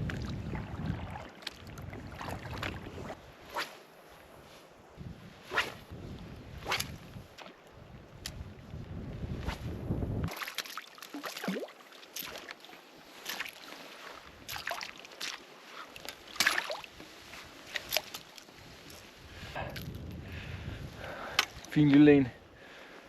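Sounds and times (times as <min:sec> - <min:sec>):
wind rumble on microphone: 0:00.0 - 0:03.5, 0:04.2 - 0:10.3, 0:18.6 - 0:22.3
water splashing around kayak: 0:00.0 - 0:03.7, 0:10.1 - 0:19.6.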